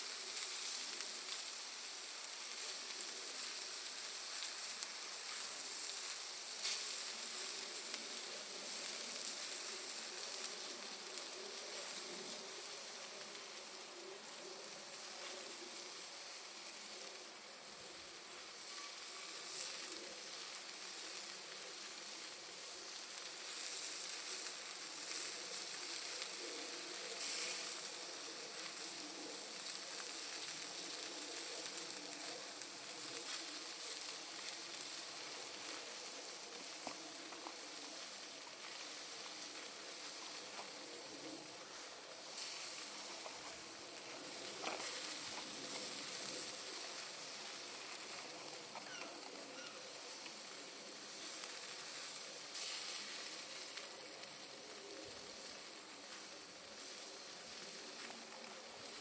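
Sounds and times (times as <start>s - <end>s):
bonfire crackling and hissing: 0.0s - 59.0s
sharp pops from charcoal: 2.2s - 12.0s, 41.7s - 50.5s.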